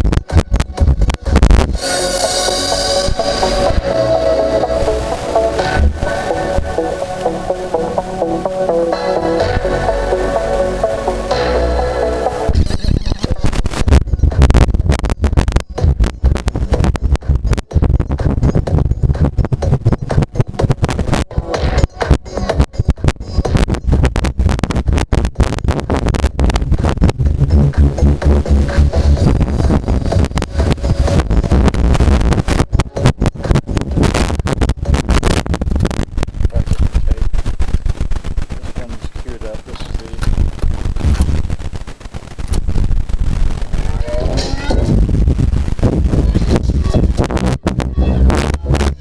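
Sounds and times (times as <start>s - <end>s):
music from a cassette boombox: 0.0s - 36.5s, 37.4s - 38.6s, 40.3s - 49.0s
crackly dropouts: 0.0s - 49.0s
heavy bass rumble: 0.0s - 49.0s.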